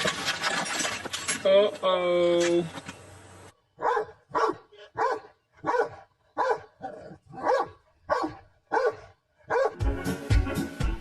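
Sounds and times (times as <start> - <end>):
dog barking: 3.8 - 9.8.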